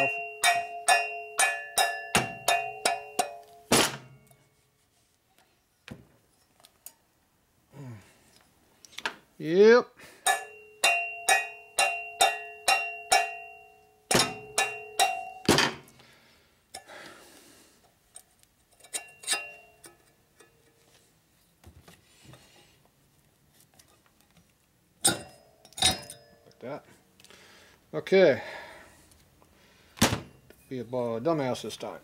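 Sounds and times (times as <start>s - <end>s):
ringing taps on metal: 0.0s - 4.4s, 10.2s - 15.6s, 18.9s - 20.7s
faint knocks and handling: 4.2s - 7.0s, 18.1s - 24.7s.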